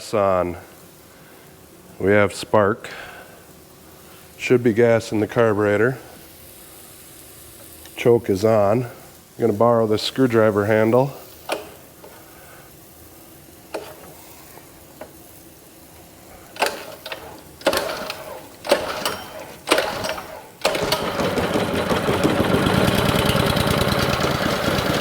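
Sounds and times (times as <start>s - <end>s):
pull cord starter pulls: 11.5s - 12.2s, 13.7s - 14.2s, 16.5s - 25.0s
small gasoline engine running: 13.7s - 14.2s, 16.5s - 25.0s.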